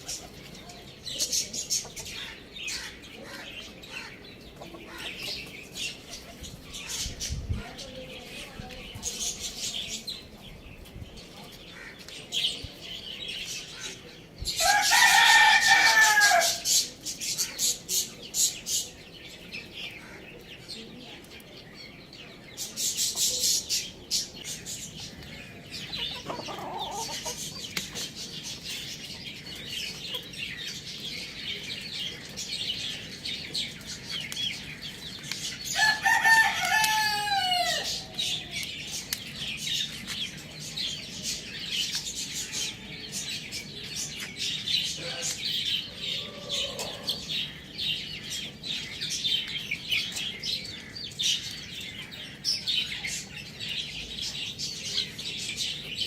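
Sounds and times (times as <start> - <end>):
budgies chattering and chirping: 0.0 - 56.0
hens clucking: 1.3 - 6.3, 25.8 - 28.2
rooster crowing: 14.6 - 16.6, 35.8 - 37.9.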